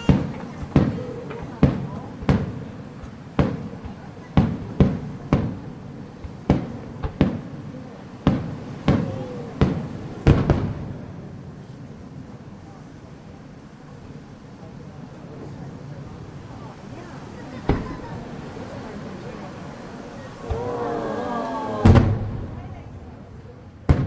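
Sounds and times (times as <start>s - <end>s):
firework shells bursting: 0.0s - 7.5s.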